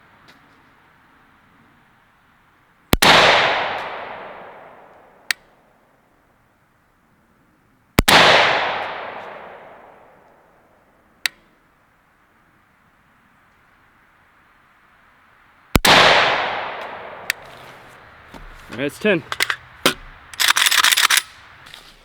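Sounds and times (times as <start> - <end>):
rifle shots echoing: 3.0 - 5.3, 8.0 - 10.3, 15.8 - 21.7.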